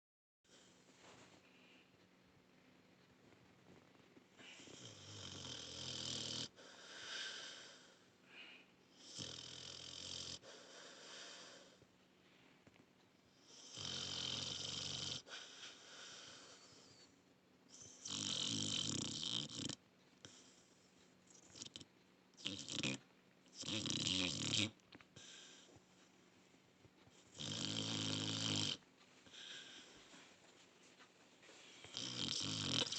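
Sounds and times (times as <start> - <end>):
dog snoring: 4.4 - 8.0, 8.9 - 11.8, 13.3 - 17.1, 17.7 - 25.8, 27.1 - 30.0, 31.8 - 32.9.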